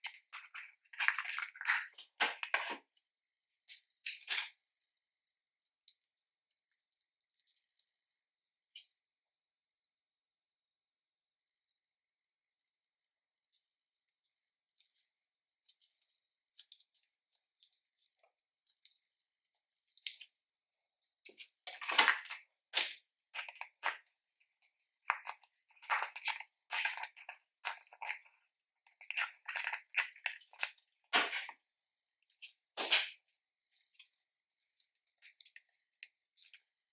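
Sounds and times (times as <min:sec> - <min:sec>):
slime squelching and crackling: 0:00.0 - 0:03.0, 0:21.2 - 0:36.9.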